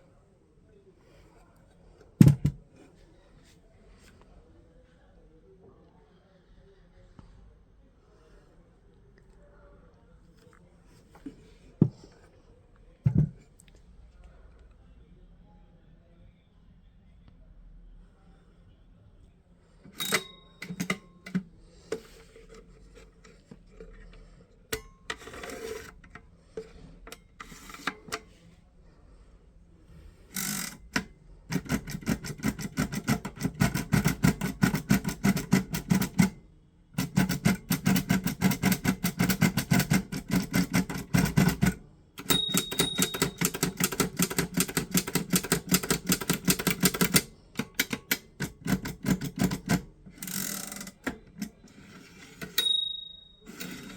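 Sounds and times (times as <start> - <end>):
braille typewriter keys clacking: 20.0 - 21.4, 31.5 - 36.3, 37.0 - 51.0.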